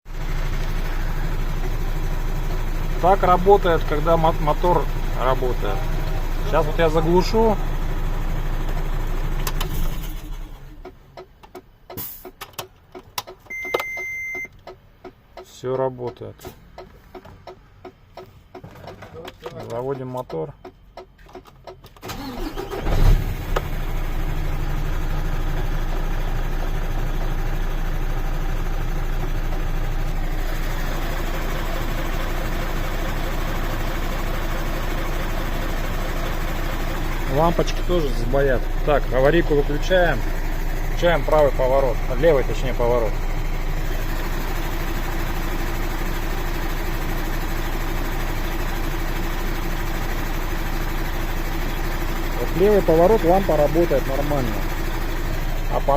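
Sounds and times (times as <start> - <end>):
truck engine idling: 0.1 - 12.1, 23.4 - 55.9
diesel truck engine starting: 0.1 - 55.9.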